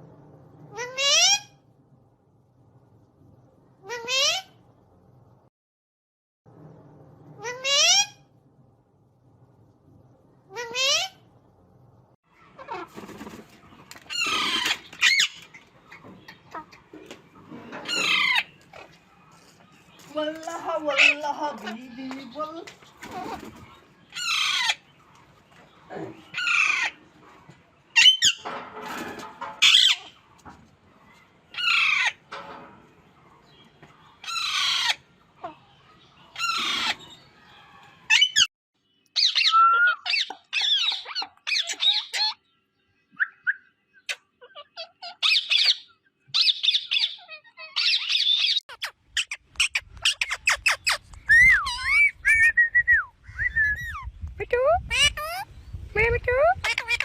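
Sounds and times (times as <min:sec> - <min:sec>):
parrot squawking and chattering: 0:00.7 - 0:01.6, 0:03.8 - 0:04.6, 0:07.4 - 0:08.2, 0:10.5 - 0:11.3, 0:14.1 - 0:15.6, 0:17.8 - 0:19.0, 0:24.1 - 0:24.9, 0:26.2 - 0:27.0, 0:28.0 - 0:28.5, 0:29.6 - 0:30.2, 0:31.5 - 0:32.3, 0:34.2 - 0:35.7, 0:36.3 - 0:37.2, 0:39.2 - 0:42.5, 0:43.2 - 0:52.7, 0:54.8 - 0:55.6, 0:56.5 - 0:57.0.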